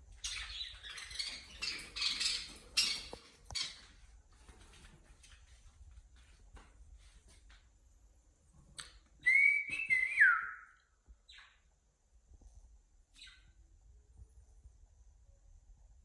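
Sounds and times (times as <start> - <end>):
cockatiel whistling: 9.2 - 10.8.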